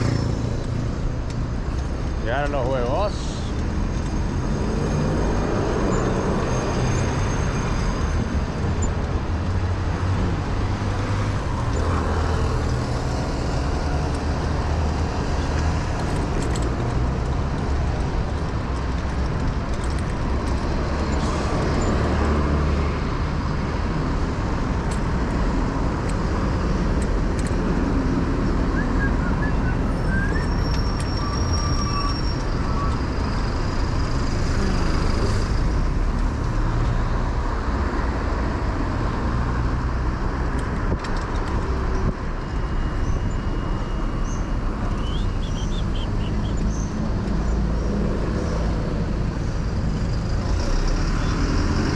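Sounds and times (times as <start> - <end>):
car and bus engines: 0.0 - 51.9.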